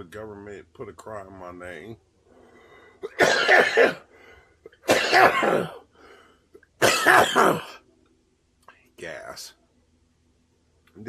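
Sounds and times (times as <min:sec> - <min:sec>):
man coughing hard: 0:03.0 - 0:04.1, 0:04.8 - 0:05.8, 0:06.8 - 0:07.8.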